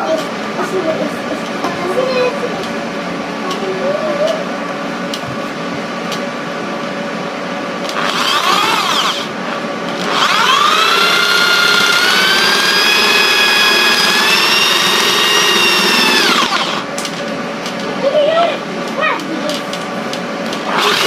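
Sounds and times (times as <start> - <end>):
electric drill motor whine: 7.8 - 16.9, 20.6 - 21.0.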